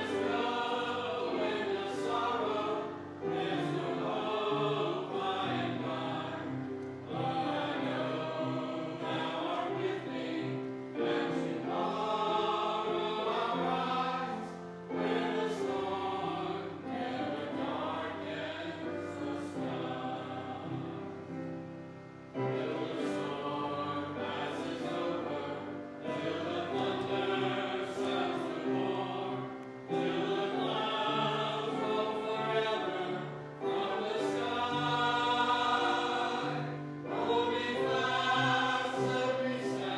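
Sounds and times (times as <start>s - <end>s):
church choir singing: 0.0s - 39.9s.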